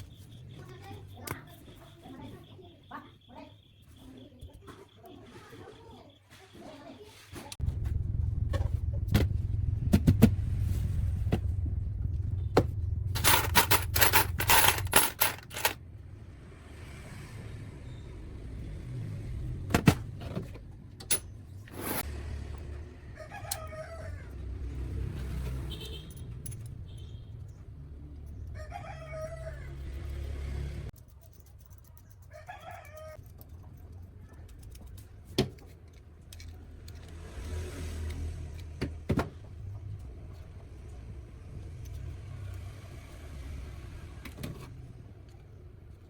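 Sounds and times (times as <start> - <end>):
low steady rumble: 7.6 - 16.2.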